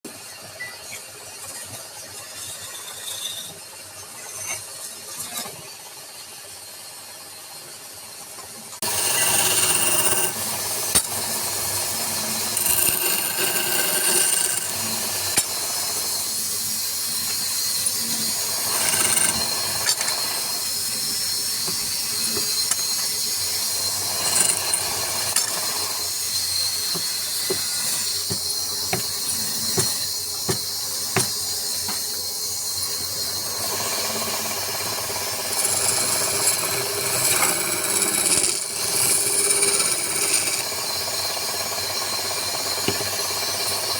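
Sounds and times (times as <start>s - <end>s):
power tool cutting wood: 8.8s - 43.9s.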